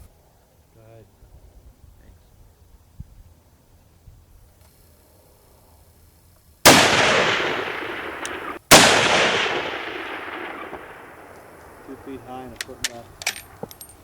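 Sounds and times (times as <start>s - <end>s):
rifle shots with rolling echo: 6.6s - 13.9s.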